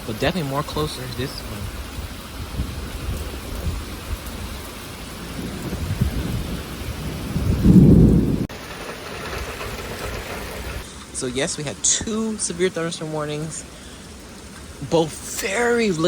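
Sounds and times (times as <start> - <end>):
thunder rumble: 0.0 - 10.9
heavy rain falling: 0.0 - 16.0.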